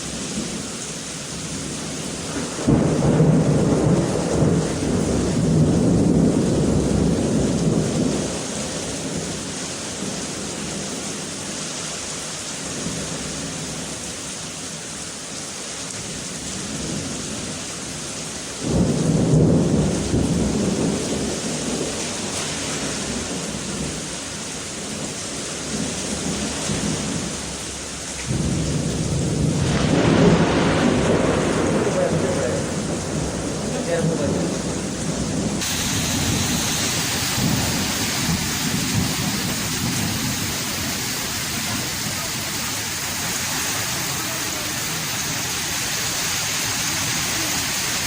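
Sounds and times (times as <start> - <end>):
heavy rain pouring: 0.0 - 48.0
thunder rumbling: 1.6 - 9.3, 18.6 - 24.2, 25.7 - 48.0.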